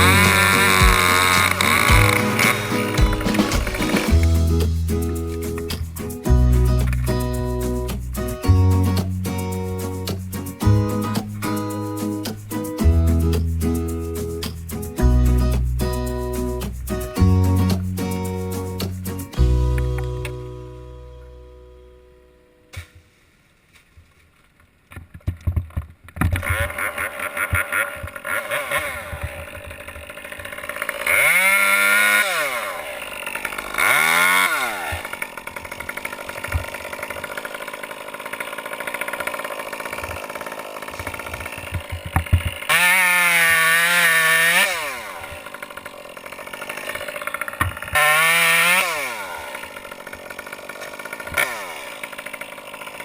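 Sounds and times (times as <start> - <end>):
chainsaw idling and revving: 0.0 - 7.8, 26.4 - 53.0.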